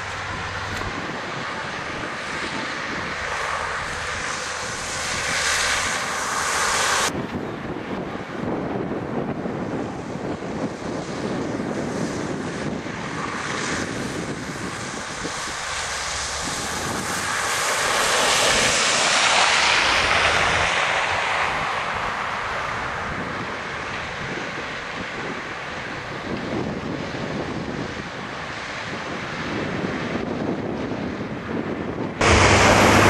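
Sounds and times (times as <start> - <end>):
tyres hissing on wet snow: 3.0 - 7.1, 12.5 - 24.2, 32.2 - 33.0.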